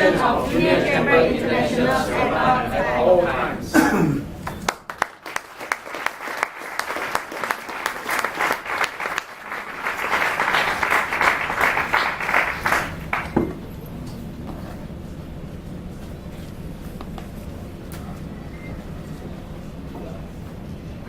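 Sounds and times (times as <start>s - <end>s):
audience applauding in a hall: 4.4s - 13.4s.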